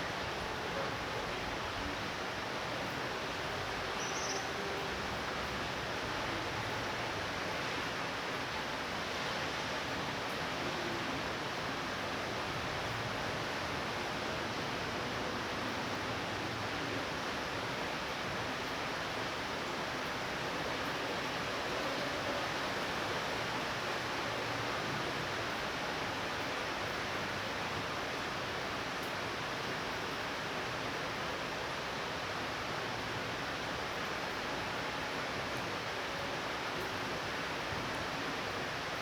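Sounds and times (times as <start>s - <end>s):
light rain falling: 0.0s - 39.0s.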